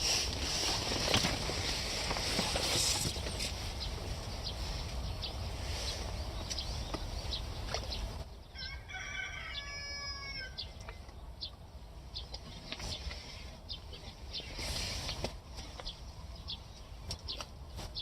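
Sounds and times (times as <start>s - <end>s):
rooster crowing: 8.5s - 10.6s.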